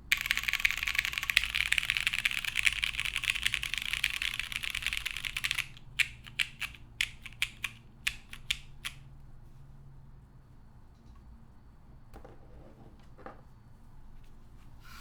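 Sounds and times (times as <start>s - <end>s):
mechanical keyboard typing: 0.0s - 9.0s.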